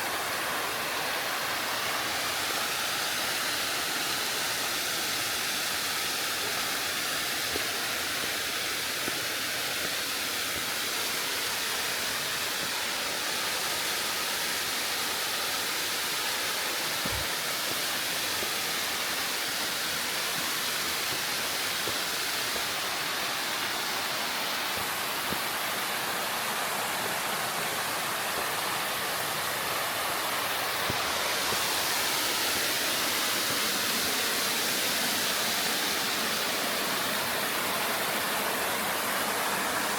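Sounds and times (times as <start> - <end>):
stream rushing over rock: 0.0 - 39.9.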